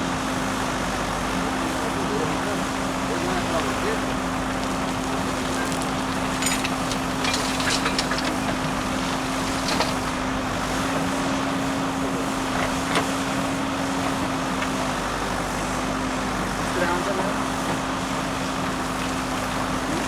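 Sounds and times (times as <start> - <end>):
diesel engine running: 3.0 - 11.0
metallic clanks and knocks: 5.4 - 10.4.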